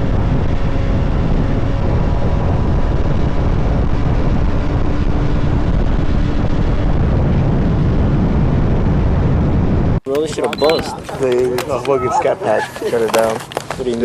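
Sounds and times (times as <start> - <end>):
moving vehicle noise: 0.0 - 14.0
wind buffeting microphone: 0.0 - 14.0
faint engine tone: 10.3 - 11.0.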